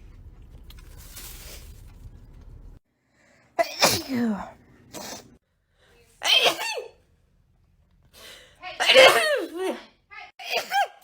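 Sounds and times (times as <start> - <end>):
person sneezing loudly: 3.6 - 4.2, 6.2 - 7.0, 8.8 - 11.0.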